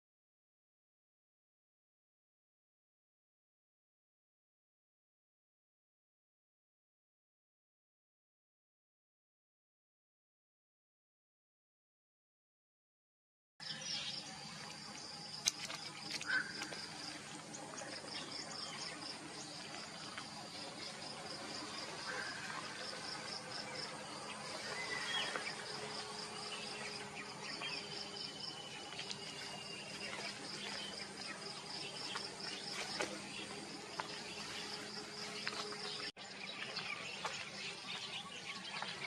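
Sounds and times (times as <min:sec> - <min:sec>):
pulsing insect chorus: 0:13.7 - 0:39.0.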